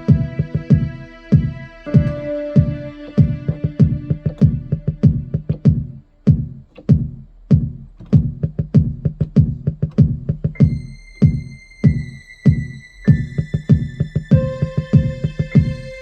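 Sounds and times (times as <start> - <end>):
high synth tone: 0.0 - 5.4
sustained synthesizer chords: 0.0 - 6.0, 10.6 - 16.0
drum machine hits: 0.0 - 16.0.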